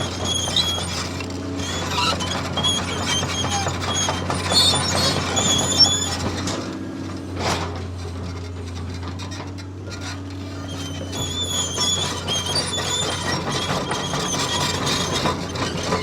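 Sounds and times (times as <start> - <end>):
toy bulldozer motors humming: 0.0 - 6.3.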